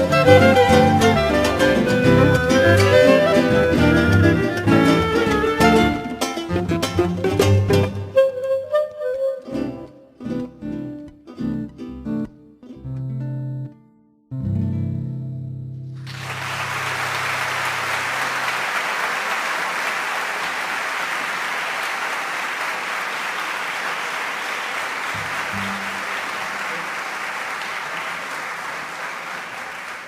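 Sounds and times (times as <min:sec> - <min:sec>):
audience applause: 0:16.0 - 0:30.0.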